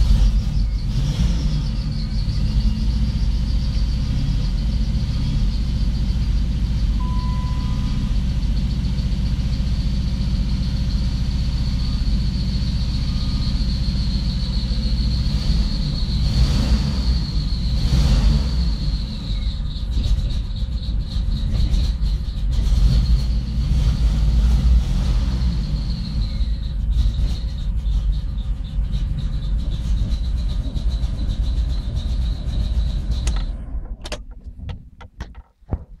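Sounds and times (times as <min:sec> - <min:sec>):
engine running unevenly: 0:00.0 - 0:36.0
steady high whine: 0:01.8 - 0:17.9.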